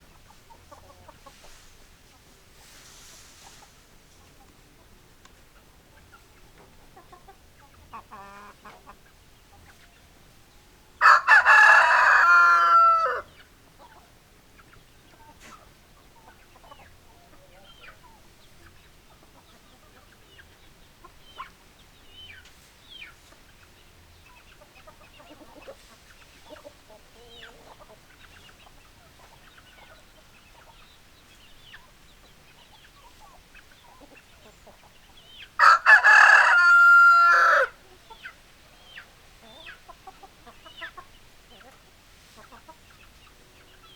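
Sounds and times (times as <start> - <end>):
chickens clucking: 0.0 - 43.9
rooster crowing: 11.0 - 13.3, 35.6 - 37.8.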